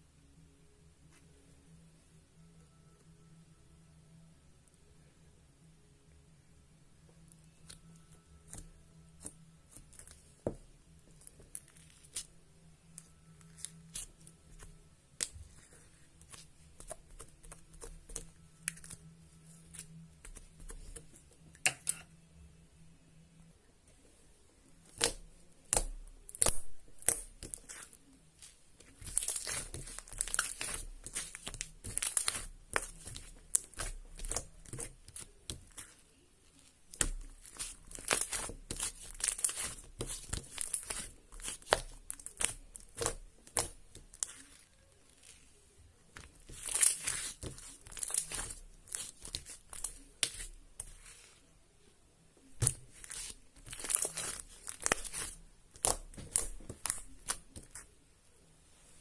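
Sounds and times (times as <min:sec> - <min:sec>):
slime squished by hand: 0:24.8 - 0:36.0, 0:36.9 - 0:45.4, 0:46.1 - 0:51.2, 0:52.6 - 0:57.8.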